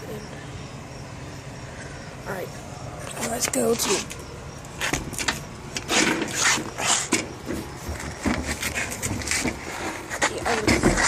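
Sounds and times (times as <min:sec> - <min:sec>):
footsteps scuffing and shuffling: 0:04.8 - 0:11.0.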